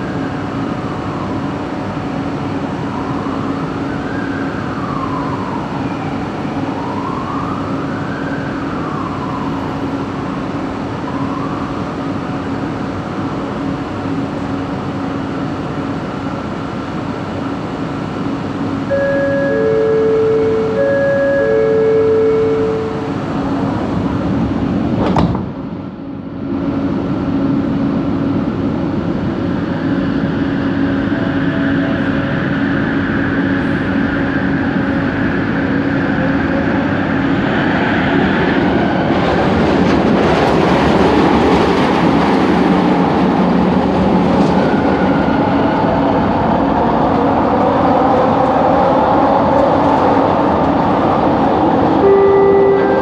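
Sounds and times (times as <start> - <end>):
metro train running noise: 0.0 - 53.0
high motor whine: 18.8 - 24.4.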